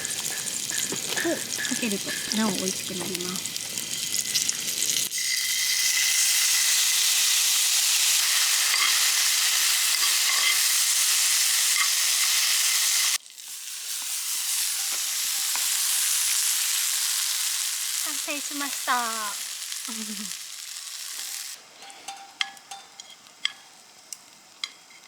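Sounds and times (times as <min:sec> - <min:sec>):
beans sizzling on a grill: 0:00.0 - 0:25.0.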